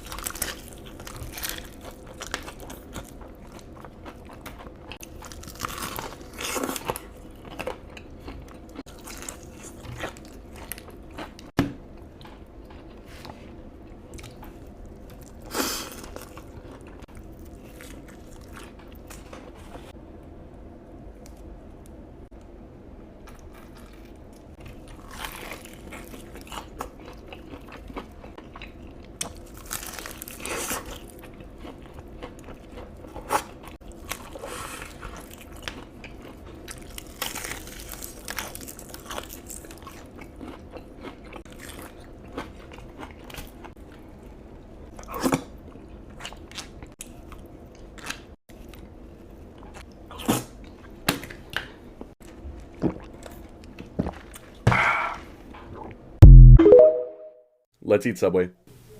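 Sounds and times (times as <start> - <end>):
crunchy chewing of crisp food: 0.0 - 19.9, 23.2 - 54.6.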